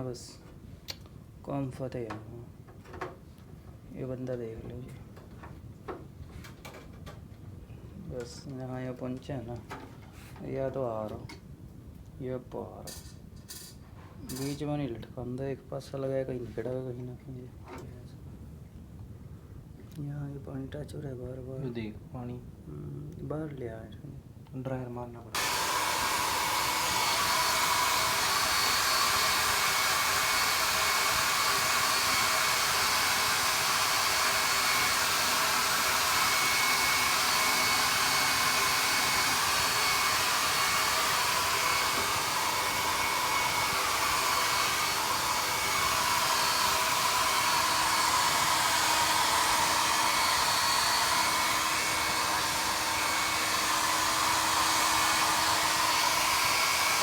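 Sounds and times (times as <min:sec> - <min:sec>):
hair dryer running: 0:25.4 - 0:57.0.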